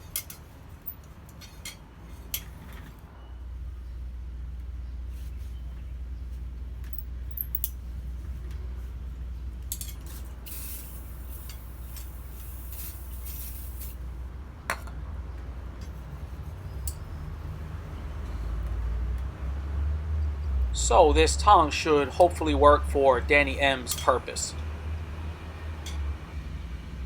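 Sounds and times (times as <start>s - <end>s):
metal tongs clinking and scraping: 0.0s - 2.6s, 9.7s - 14.0s, 23.8s - 24.3s.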